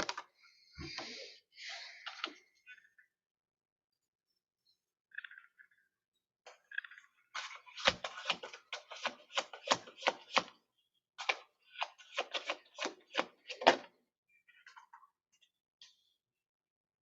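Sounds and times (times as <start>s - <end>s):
cards being shuffled: 7.4s - 10.5s, 11.2s - 13.8s
sharp card slaps and taps: 7.8s - 10.5s, 11.2s - 13.8s.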